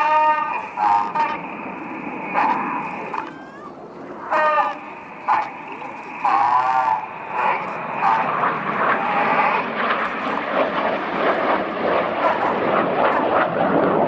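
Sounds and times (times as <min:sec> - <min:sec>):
jets flying past: 0:00.0 - 0:14.0.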